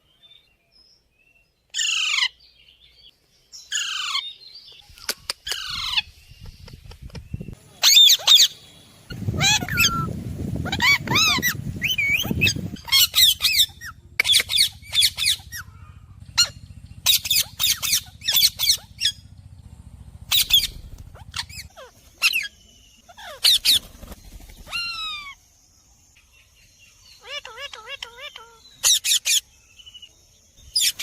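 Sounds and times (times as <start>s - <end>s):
parrots squawking: 1.8s - 2.4s, 3.7s - 4.3s, 5.5s - 6.1s, 7.8s - 19.2s, 20.3s - 22.5s, 23.1s - 23.9s, 24.7s - 25.4s, 27.2s - 29.4s.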